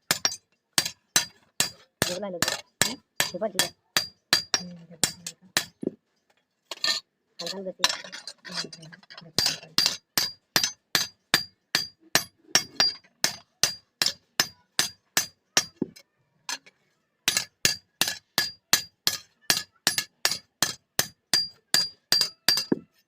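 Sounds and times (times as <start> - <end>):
hammer striking steel on anvil: 9.4 - 15.7, 17.3 - 22.8.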